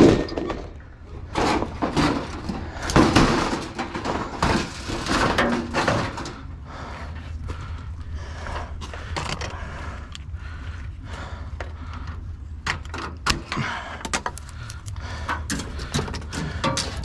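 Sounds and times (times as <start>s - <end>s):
scrap metal clinking and rattling: 0.0s - 6.4s, 15.2s - 17.0s
steady low hum: 0.0s - 17.0s.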